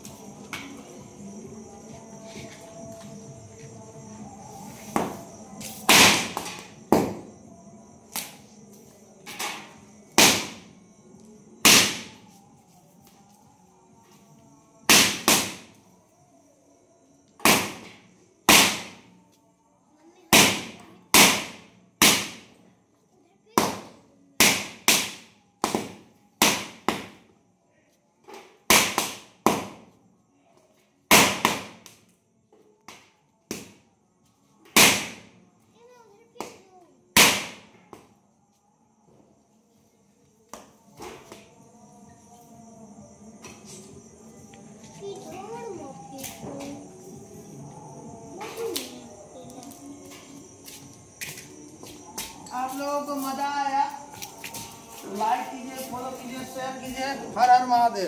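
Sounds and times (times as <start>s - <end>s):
firecracker bangs: 5.8s - 7.3s, 10.2s - 10.6s, 11.6s - 12.2s, 14.9s - 15.7s, 17.4s - 19.0s, 20.3s - 22.5s, 23.6s - 27.2s, 28.7s - 29.8s, 31.1s - 31.9s, 34.8s - 35.3s, 37.2s - 37.8s.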